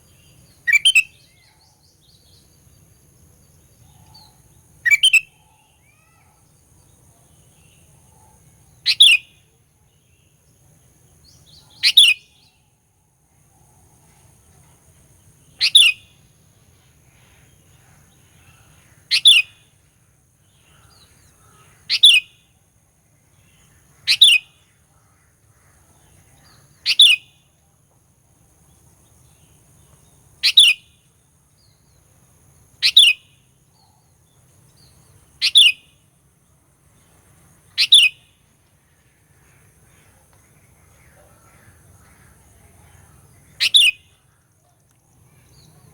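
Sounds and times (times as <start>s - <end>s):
bird two-part call: 0.7s - 1.8s, 4.0s - 6.5s, 8.2s - 9.3s, 11.5s - 12.5s, 15.6s - 16.1s, 18.4s - 19.6s, 20.7s - 22.3s, 26.5s - 27.3s, 35.4s - 35.8s, 37.8s - 38.2s, 43.5s - 44.3s.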